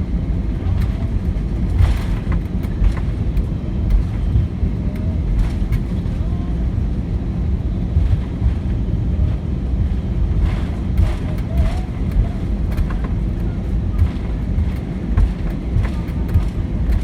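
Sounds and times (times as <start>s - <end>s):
aircraft engines idling: 0.0s - 17.0s
wheels rolling on taxiway: 0.0s - 17.0s
light knocks and rattles: 8.0s - 17.0s.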